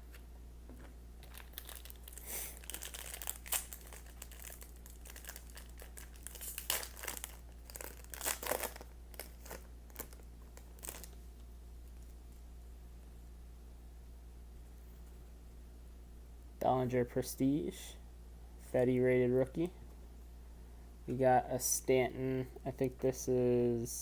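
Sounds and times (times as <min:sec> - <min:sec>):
packaging rustling and crinkling: 0:01.2 - 0:11.2.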